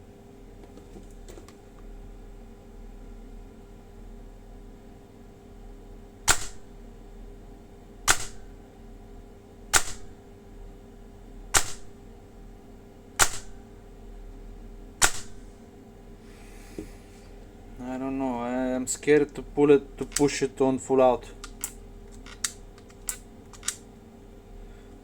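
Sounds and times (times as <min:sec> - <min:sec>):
airsoft gun shots: 0:06.3 - 0:06.7, 0:08.1 - 0:08.5, 0:09.8 - 0:10.2, 0:11.6 - 0:11.9, 0:13.2 - 0:13.6, 0:15.0 - 0:15.4.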